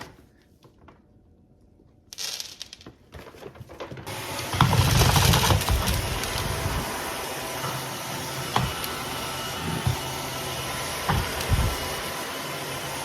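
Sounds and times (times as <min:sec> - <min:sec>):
floor cleaner running: 0:04.1 - 0:13.0.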